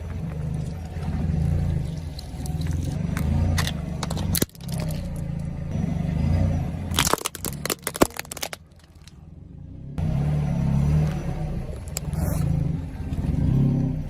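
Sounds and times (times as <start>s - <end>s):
low engine drone: 0.0s - 14.0s
brittle objects cracking: 3.6s - 5.2s, 6.9s - 9.1s.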